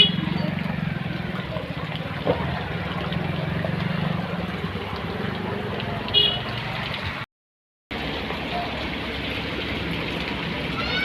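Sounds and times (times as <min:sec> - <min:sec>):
vehicle engine running: 0:00.0 - 0:06.9
noisy traffic background: 0:00.0 - 0:07.3, 0:07.9 - 0:11.0.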